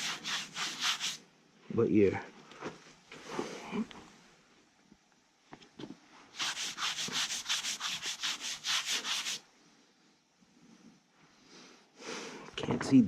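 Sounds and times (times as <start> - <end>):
rubbing on rough hard surface: 0.0 - 1.2, 6.3 - 9.4.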